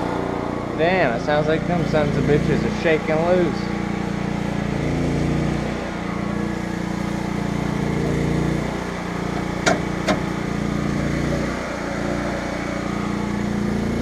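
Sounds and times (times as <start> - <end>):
generator engine running: 0.0 - 14.0
sharp metallic knocks: 9.3 - 10.4.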